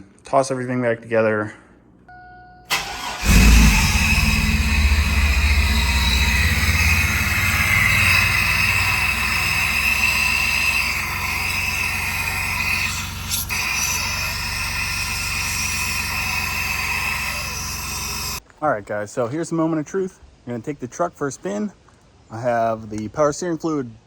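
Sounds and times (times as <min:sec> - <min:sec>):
engine idling: 0:02.7 - 0:18.4
high-pitched whine: 0:03.2 - 0:18.4.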